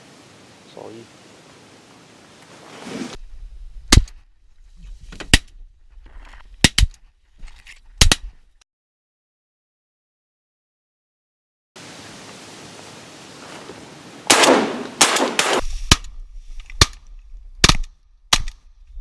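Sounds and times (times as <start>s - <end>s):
shotgun blasts: 14.3s - 16.0s.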